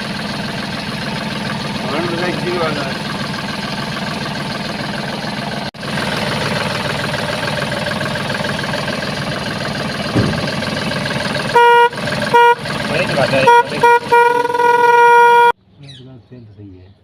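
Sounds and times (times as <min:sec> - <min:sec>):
vehicle engine idling: 0:00.0 - 0:16.0
car horn toot: 0:11.2 - 0:15.6.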